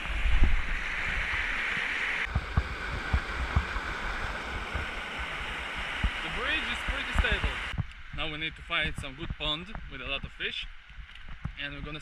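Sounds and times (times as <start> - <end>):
rushing stream water: 0.0 - 7.8.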